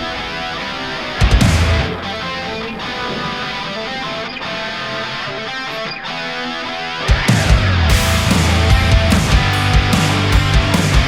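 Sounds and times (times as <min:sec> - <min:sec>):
electric guitar playing: 0:00.0 - 0:11.0
heavy metal band playing: 0:00.0 - 0:11.0.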